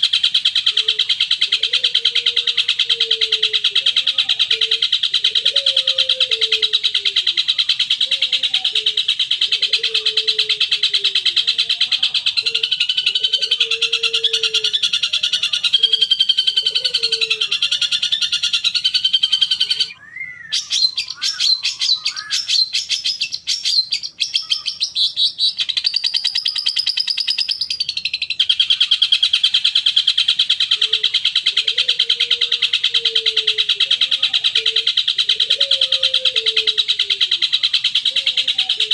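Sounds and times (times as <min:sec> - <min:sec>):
varied birdsong: 0:00.0 - 0:38.9.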